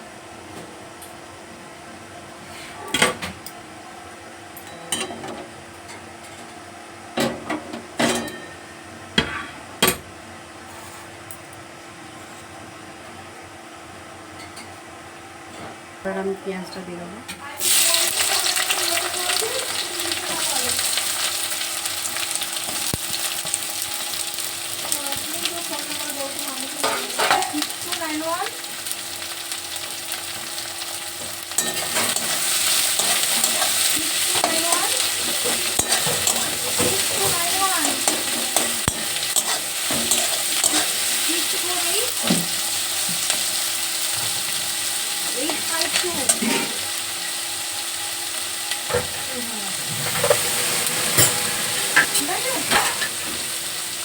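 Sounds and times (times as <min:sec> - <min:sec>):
onion sizzling in oil: 0:17.6 - 0:54.0.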